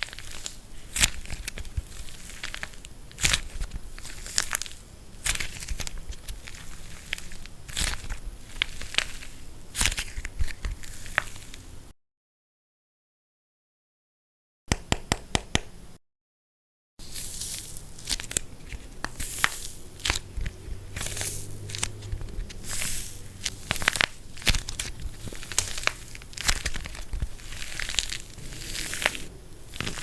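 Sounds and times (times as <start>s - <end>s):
dried clay cracking and crumbling: 0.0s - 11.7s, 17.0s - 30.0s.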